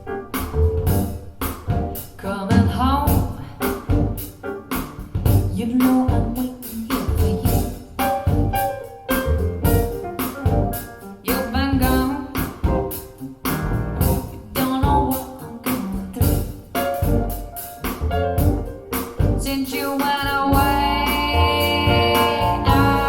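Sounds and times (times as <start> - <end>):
song over speakers: 14.0 - 23.0.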